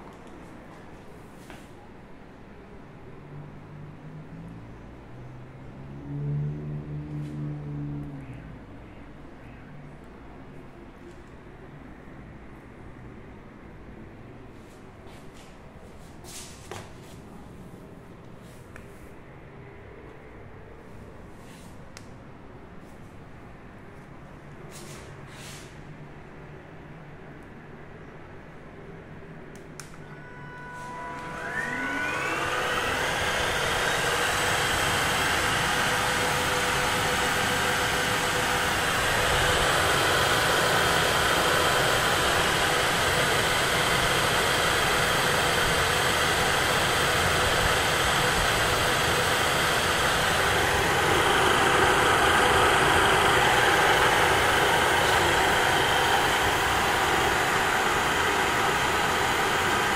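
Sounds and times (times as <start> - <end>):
click: 29.5 - 30.1
short electronic tones: 30.0 - 32.0
vacuum motor whining: 30.0 - 59.9.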